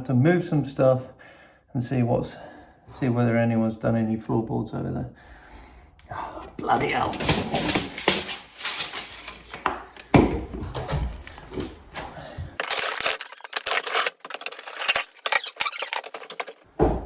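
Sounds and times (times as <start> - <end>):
household items rustling: 6.6 - 16.7
small knocks and clatters: 6.9 - 12.6.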